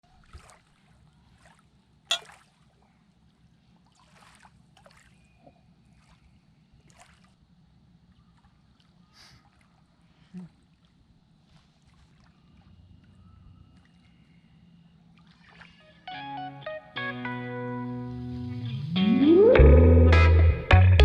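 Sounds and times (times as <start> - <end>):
paddle splashing in water: 0.0 - 7.4, 8.1 - 14.4, 15.1 - 16.0
sharp splash or knock: 2.1 - 2.6.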